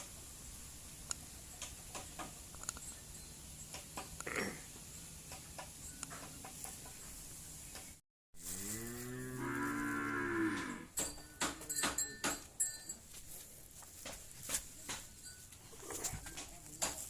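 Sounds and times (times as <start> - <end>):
sharp clicks and knocks: 1.1 - 2.9
cow mooing: 8.5 - 10.9.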